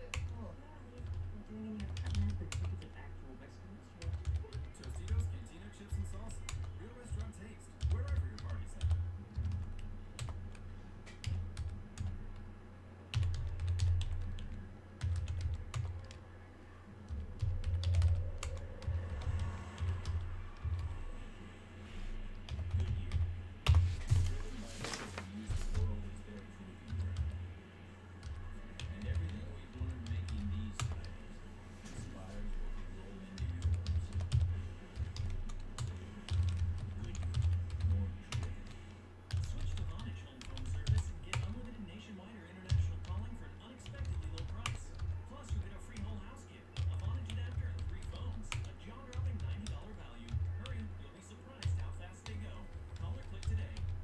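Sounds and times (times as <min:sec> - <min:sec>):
typing on computer keyboard: 0:01.8 - 0:02.9, 0:06.0 - 0:10.4, 0:13.1 - 0:16.2, 0:17.1 - 0:20.9, 0:33.3 - 0:41.7, 0:43.8 - 0:46.1.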